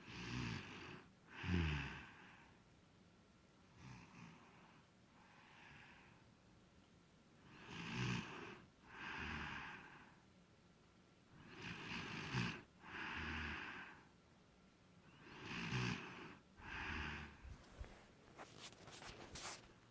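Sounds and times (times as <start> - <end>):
person snoring: 0.0 - 2.4, 7.5 - 10.0, 11.4 - 14.0, 15.1 - 17.7.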